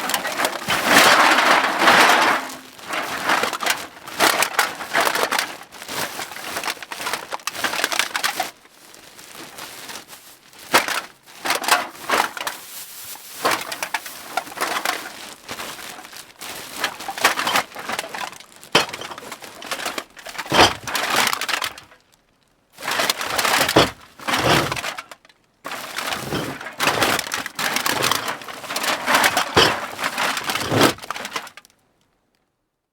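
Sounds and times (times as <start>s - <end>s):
metal cans clinking: 0.2s - 2.8s, 18.8s - 21.1s, 22.9s - 25.0s, 25.8s - 31.4s
bag rustling: 5.9s - 21.6s, 22.8s - 25.0s, 25.7s - 31.4s.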